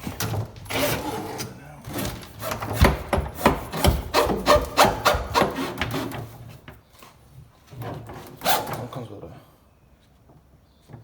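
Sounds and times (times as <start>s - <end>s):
tools knocking and rubbing: 0.7s - 6.5s.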